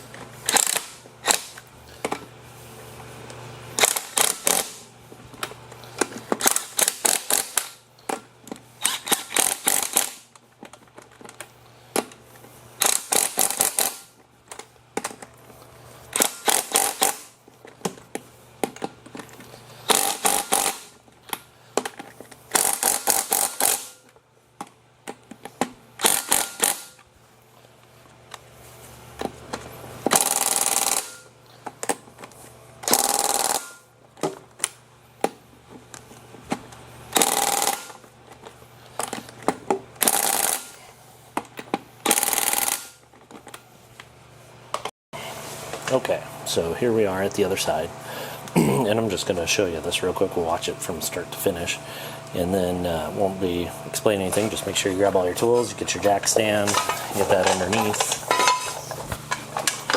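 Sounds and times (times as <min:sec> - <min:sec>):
impact wrench rattling: 0:00.1 - 0:02.2, 0:03.8 - 0:15.2, 0:16.1 - 0:24.1, 0:25.1 - 0:27.0, 0:29.2 - 0:34.6, 0:37.1 - 0:43.6, 0:54.4 - 0:59.9
ratchet clicking: 0:00.4 - 0:01.6, 0:03.8 - 0:04.8, 0:06.4 - 0:07.8, 0:08.8 - 0:10.2, 0:12.8 - 0:14.1, 0:16.1 - 0:17.3, 0:19.8 - 0:20.9, 0:22.5 - 0:24.0, 0:26.0 - 0:27.0, 0:30.1 - 0:31.3, 0:32.8 - 0:33.8, 0:37.1 - 0:38.0, 0:40.0 - 0:40.8, 0:42.0 - 0:43.0.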